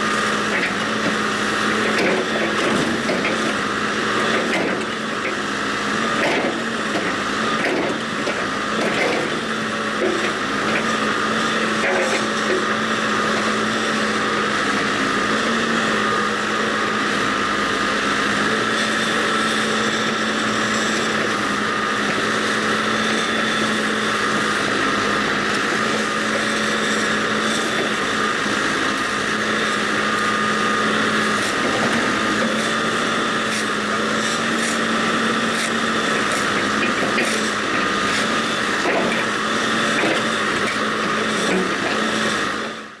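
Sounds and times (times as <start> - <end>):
backhoe engine running: 0.0 - 43.0.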